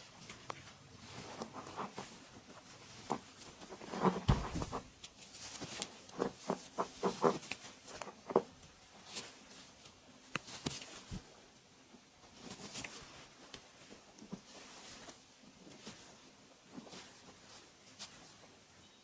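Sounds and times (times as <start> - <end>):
hands slapping and tapping body: 10.2 - 11.2.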